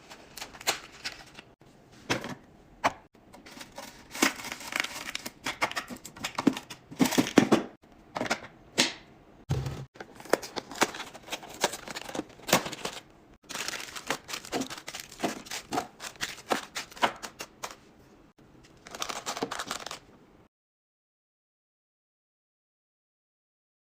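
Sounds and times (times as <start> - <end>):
plastic packaging crinkling: 0.1 - 1.5, 3.5 - 5.4, 10.0 - 17.8, 18.8 - 20.1.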